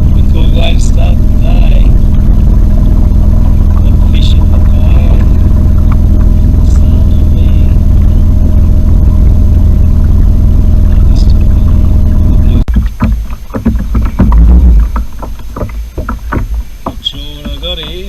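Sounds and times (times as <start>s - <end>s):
outboard motor droning: 0.0s - 18.0s
knocks and rustles: 12.7s - 18.0s.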